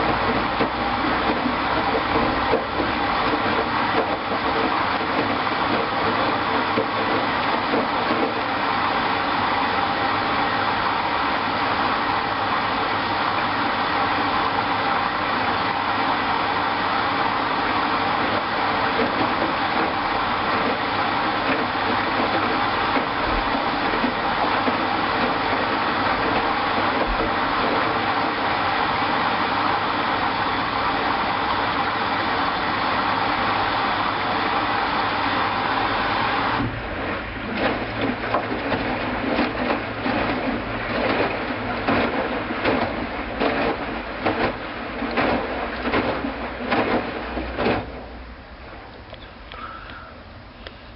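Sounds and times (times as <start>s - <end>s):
washing machine drum turning: 0.0s - 49.4s
water filling washing machine: 0.0s - 49.5s.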